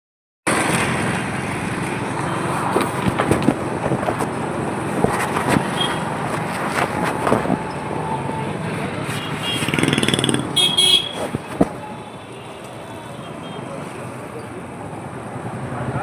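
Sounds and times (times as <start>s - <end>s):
engines running: 0.5s - 13.1s
loud outdoor noise: 0.5s - 16.0s
sharp knocks and clatters: 1.8s - 7.8s, 9.6s - 11.9s.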